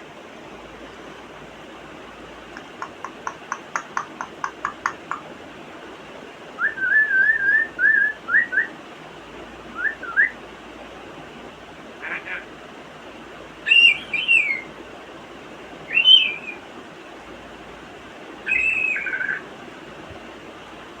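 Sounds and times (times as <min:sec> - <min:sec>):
parrot clicking: 0:02.5 - 0:05.3
parrot whistling: 0:13.6 - 0:14.7, 0:15.9 - 0:16.6, 0:18.5 - 0:19.4.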